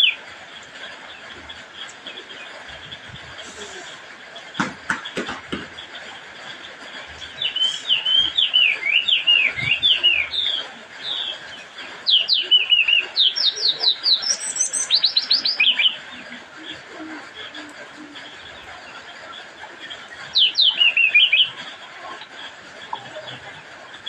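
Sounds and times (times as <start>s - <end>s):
high bird twitter: 6.6s - 22.3s
bird singing whistled notes: 7.2s - 16.2s, 20.3s - 21.6s.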